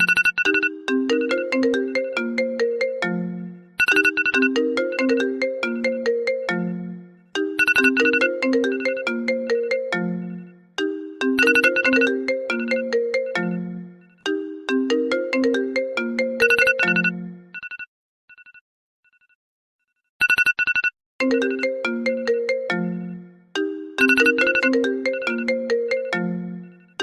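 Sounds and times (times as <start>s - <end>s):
phone alert tone marimba melody: 0.0s - 17.5s, 21.2s - 27.0s.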